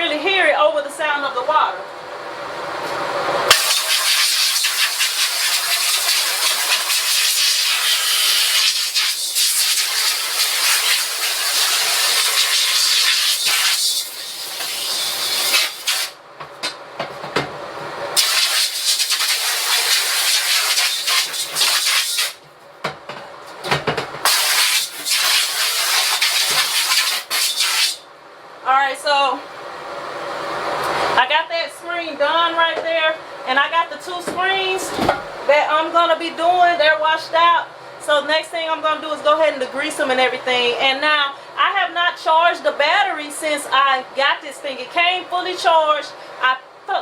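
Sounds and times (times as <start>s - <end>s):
pressure washer spray hissing: 3.5s - 16.2s, 18.2s - 22.4s, 24.3s - 28.0s.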